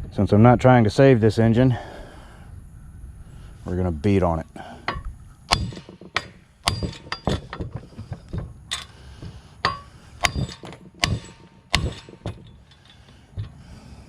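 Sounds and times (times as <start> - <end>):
hammer blows on metal engine: 4.9 - 13.6.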